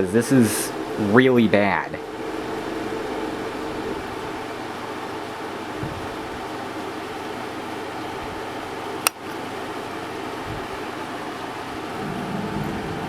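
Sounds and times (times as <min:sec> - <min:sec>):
air conditioner fan rushing: 0:00.0 - 0:13.0
heavy rain: 0:10.9 - 0:13.0.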